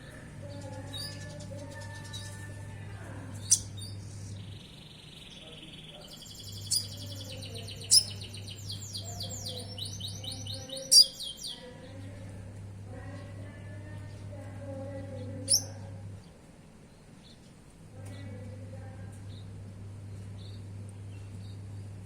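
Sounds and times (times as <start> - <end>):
steady low hum: 0.0 - 22.0
bird twittering trills: 3.4 - 12.0, 15.1 - 15.9.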